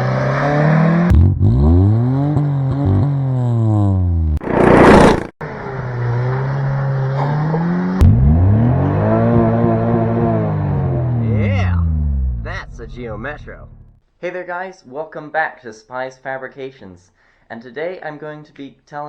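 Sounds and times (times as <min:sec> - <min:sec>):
car engine revving: 0:04.4 - 0:05.3
loud rushing burst: 0:04.4 - 0:05.3.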